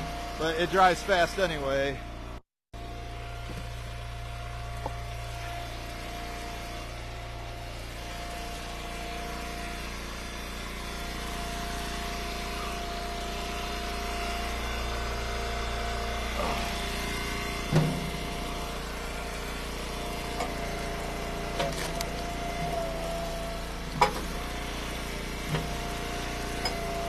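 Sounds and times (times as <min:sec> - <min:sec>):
wood splitter engine running: 0:00.0 - 0:27.0.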